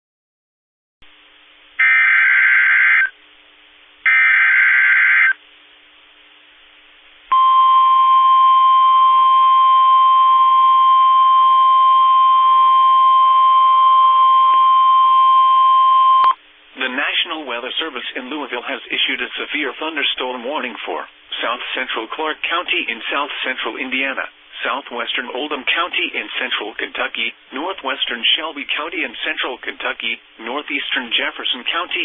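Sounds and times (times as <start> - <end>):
faint radio hiss: 1.0 - 8.3, 16.3 - 32.0
raspy digital data bursts: 1.8 - 3.1, 4.1 - 5.4
steady warning alarm tone: 1.8 - 3.1, 4.1 - 5.4.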